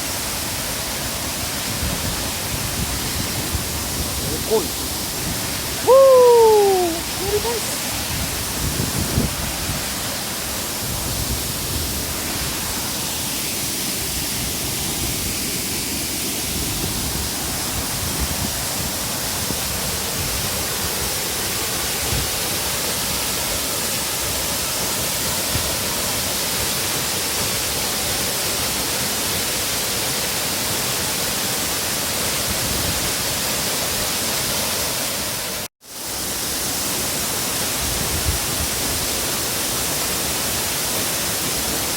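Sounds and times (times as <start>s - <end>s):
waterfall rushing: 0.0s - 41.9s.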